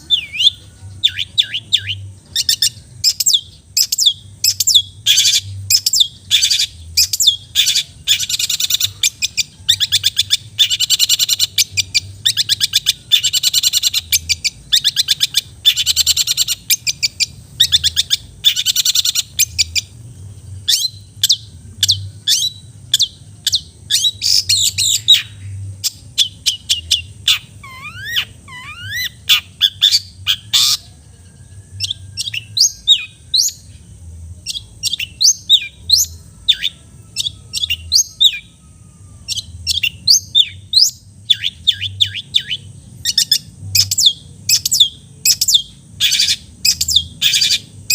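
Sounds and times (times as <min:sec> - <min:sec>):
shrike singing: 0:00.0 - 0:47.9.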